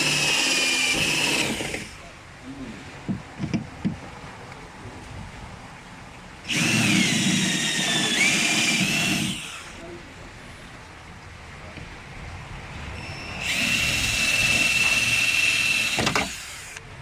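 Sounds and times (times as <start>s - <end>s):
power drill whining: 0.0s - 1.9s, 6.5s - 9.8s, 13.0s - 16.8s.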